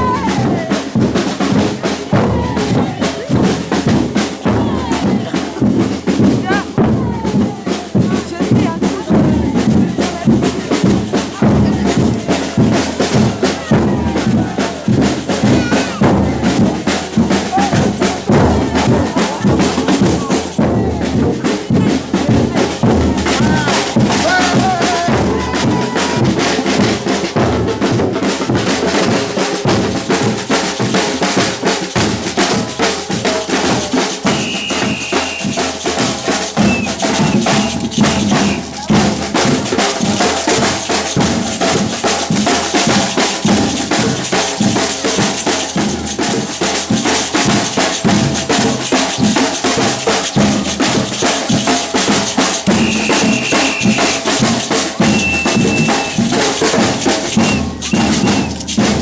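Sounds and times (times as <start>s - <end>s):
samba percussion ensemble: 0.0s - 59.0s
shrill whistle: 34.3s - 35.7s, 36.6s - 38.6s, 52.7s - 54.4s, 55.0s - 56.5s, 57.3s - 58.7s.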